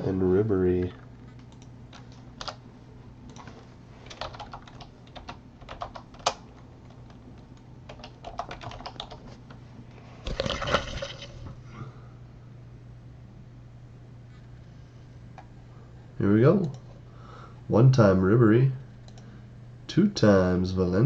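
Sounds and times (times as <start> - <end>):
steady low hum: 0.0 - 21.0
typing on keyboard: 1.4 - 2.6, 4.1 - 9.3.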